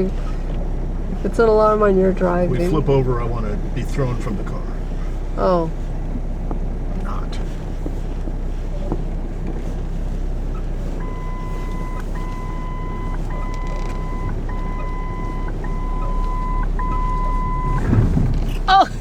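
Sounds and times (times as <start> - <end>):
car cabin driving drone: 0.0 - 19.0
seatbelt warning chime: 10.5 - 17.8.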